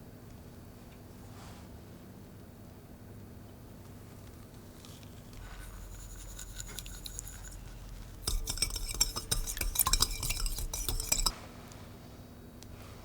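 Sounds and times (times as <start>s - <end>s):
metal utensil scraping cookware: 5.6s - 11.3s.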